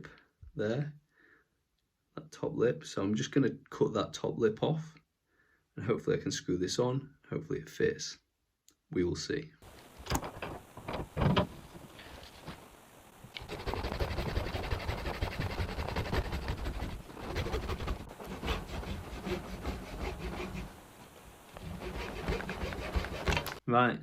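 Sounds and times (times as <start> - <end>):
hacksaw sawing plastic: 13.4 - 20.7, 21.6 - 23.6.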